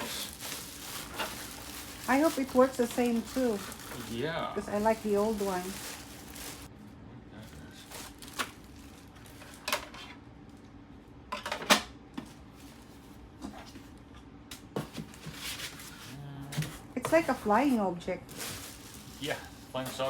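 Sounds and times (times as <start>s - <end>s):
packing material rustling: 0.0s - 6.7s, 7.6s - 9.7s, 18.2s - 20.0s.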